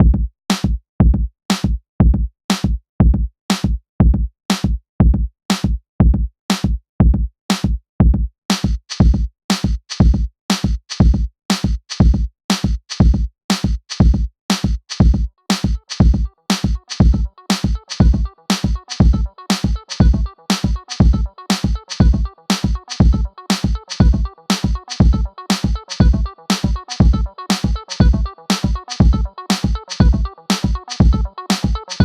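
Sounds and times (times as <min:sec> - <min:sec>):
electronic music with drum machine: 0:15.0 - 0:32.0.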